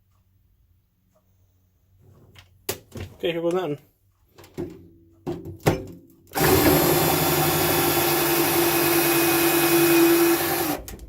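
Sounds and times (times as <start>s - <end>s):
drill bit clicks: 6.3s - 11.0s
power drill spinning: 6.4s - 11.0s.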